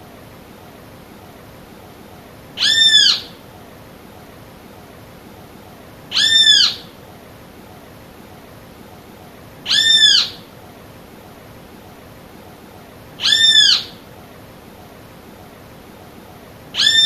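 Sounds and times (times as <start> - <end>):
bird calling: 2.6 - 3.4, 6.1 - 7.0, 9.6 - 10.5, 13.2 - 14.1, 16.7 - 17.0.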